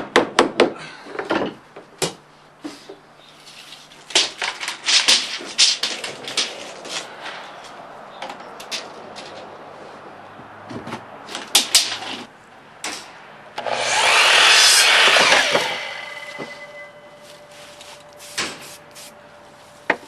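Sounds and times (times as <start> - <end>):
power saw cutting board: 13.6 - 17.2.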